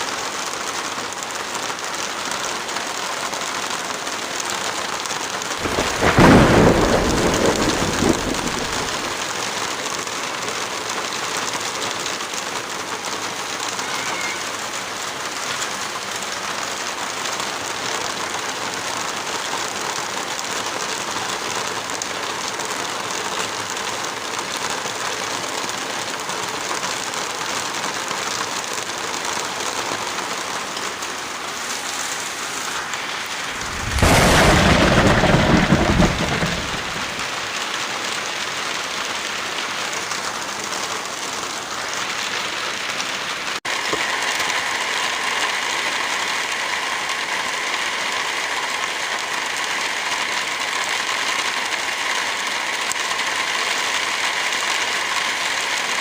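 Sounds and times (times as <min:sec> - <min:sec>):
heavy rain falling: 0:00.0 - 0:56.0
thunder clap rumbling: 0:05.6 - 0:09.2, 0:32.8 - 0:37.7.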